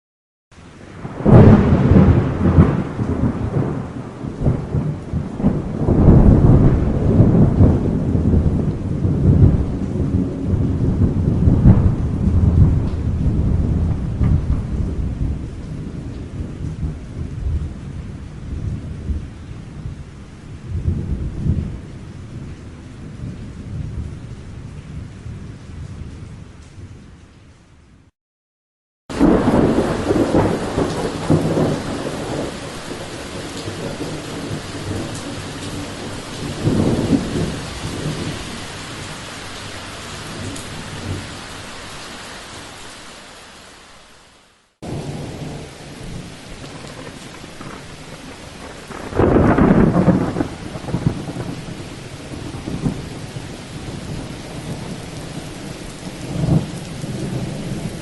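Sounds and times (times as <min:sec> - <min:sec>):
thunder crack and rumbling: 0:00.9 - 0:20.0, 0:29.1 - 0:39.2, 0:44.8 - 0:58.0
rain hiss: 0:29.1 - 0:58.0.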